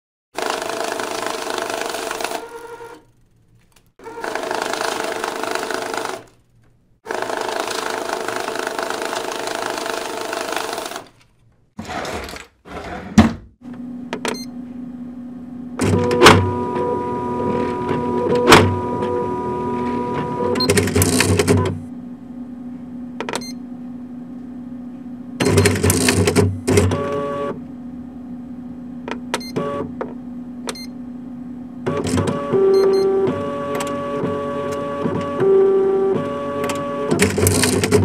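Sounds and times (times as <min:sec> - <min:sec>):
printer motor hum: 0:00.4 - 0:03.4, 0:04.0 - 0:06.4, 0:07.1 - 0:11.1, 0:13.7 - 0:38.0
banknote counter whirring: 0:00.4 - 0:06.4, 0:07.0 - 0:11.1, 0:15.7 - 0:21.9, 0:25.4 - 0:27.6, 0:31.8 - 0:38.0
printer clicks: 0:15.8 - 0:19.2, 0:19.8 - 0:21.8, 0:36.1 - 0:38.0.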